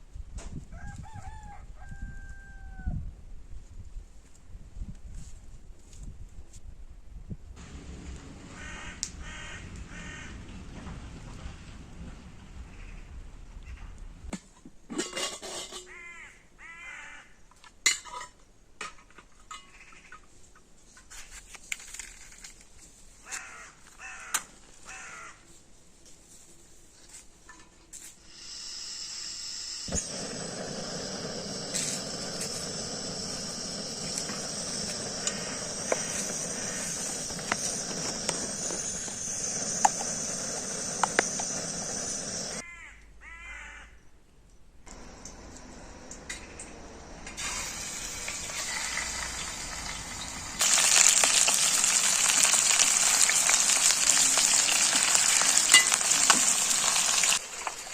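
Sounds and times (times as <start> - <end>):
crow-like bird cawing: 8.6 - 10.4, 15.9 - 17.4, 23.2 - 25.4, 31.2 - 44.1
loud steady hissing: 28.2 - 42.6, 44.9 - 57.9.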